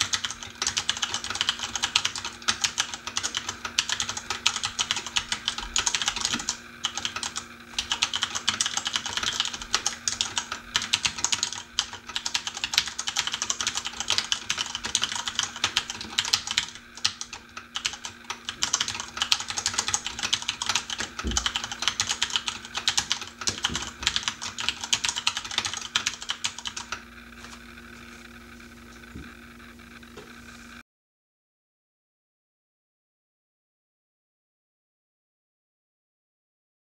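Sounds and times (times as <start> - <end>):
mechanical keyboard typing: 0.0 - 27.0
air conditioner hum: 0.0 - 30.8.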